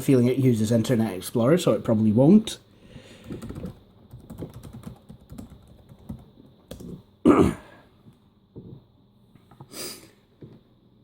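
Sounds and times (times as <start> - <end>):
laptop keyboard typing: 3.2 - 7.0.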